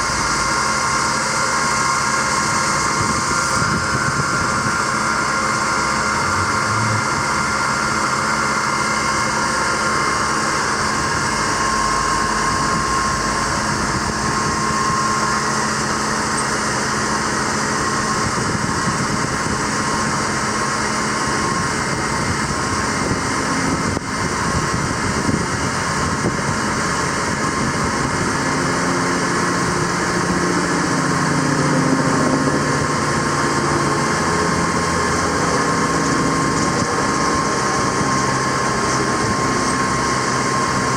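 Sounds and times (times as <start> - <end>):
diesel truck engine running: 0.0 - 40.9
high steady whine: 0.0 - 40.9.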